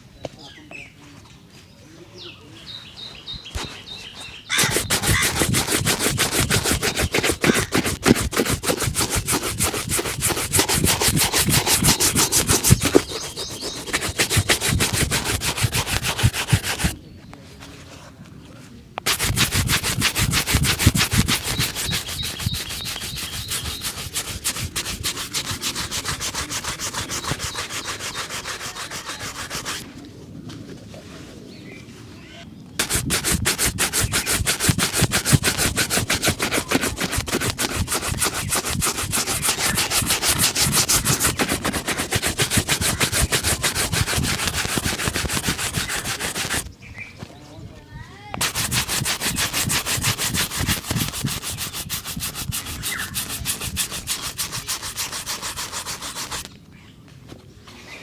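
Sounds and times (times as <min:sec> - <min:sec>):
shoe buffing rubbing strokes: 0:03.5 - 0:17.0, 0:19.0 - 0:29.8, 0:32.8 - 0:46.7, 0:48.4 - 0:56.5.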